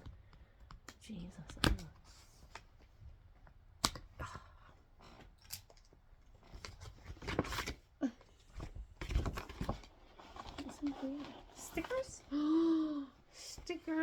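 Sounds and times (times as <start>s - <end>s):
clicks and taps of packaging: 0.0s - 2.7s, 3.4s - 4.4s
paper and plastic crinkling: 5.4s - 12.8s.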